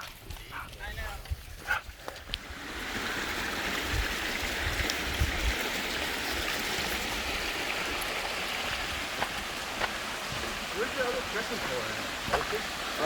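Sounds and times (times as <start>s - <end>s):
creek water rushing: 1.9s - 13.0s.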